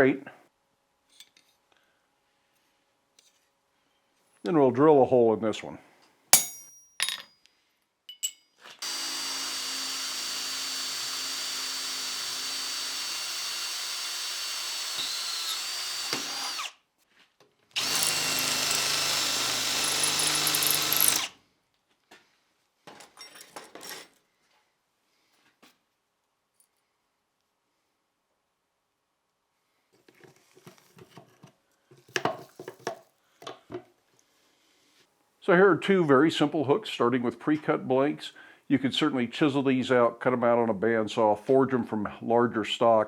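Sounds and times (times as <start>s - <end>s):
electric drill boring steel: 8.8s - 16.8s, 17.8s - 21.3s.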